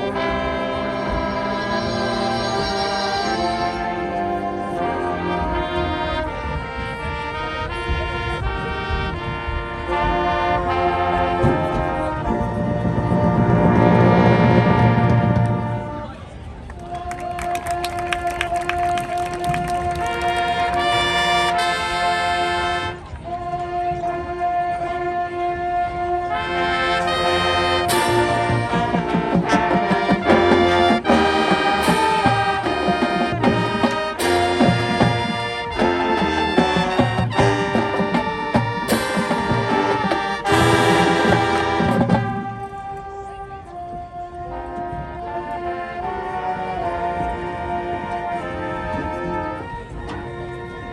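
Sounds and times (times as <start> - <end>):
marching percussion: 0.0 - 16.1, 17.1 - 23.3, 26.4 - 43.2
brass section playing chords: 0.0 - 16.5, 17.1 - 50.9.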